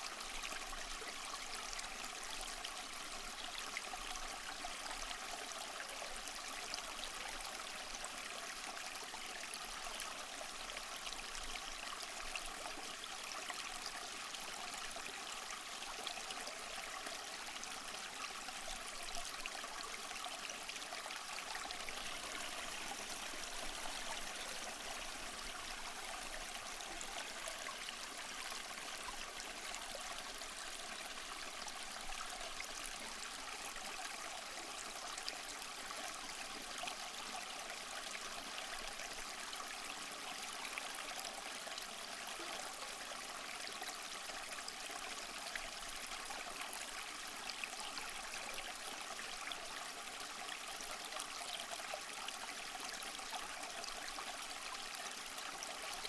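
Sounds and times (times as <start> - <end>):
small waterfall splashing over rocks: 0.0 - 56.0.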